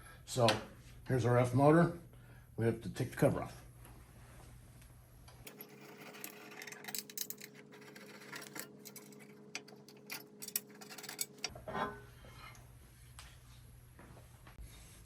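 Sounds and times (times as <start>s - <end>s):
small metal parts clicking: 5.4s - 11.5s.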